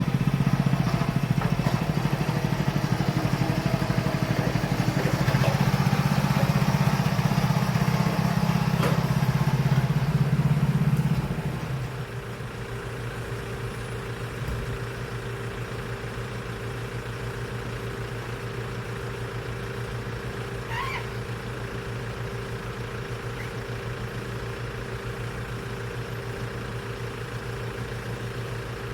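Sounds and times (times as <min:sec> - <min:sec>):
small engine running: 0:00.0 - 0:12.2.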